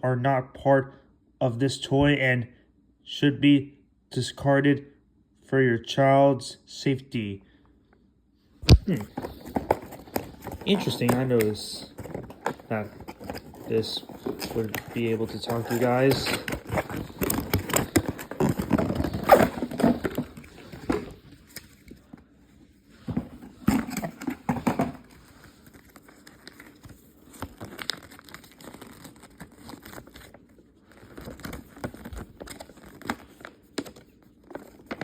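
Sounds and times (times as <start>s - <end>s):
packaging rustling and crinkling: 8.7s - 22.3s, 22.9s - 35.0s.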